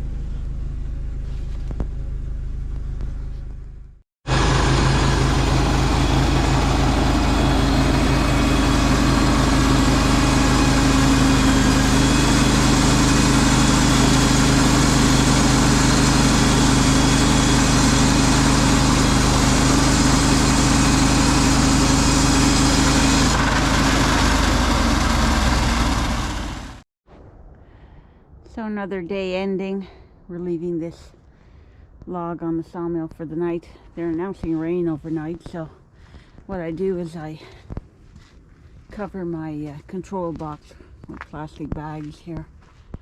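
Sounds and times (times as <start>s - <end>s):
engine running steadily: 0.0s - 26.8s.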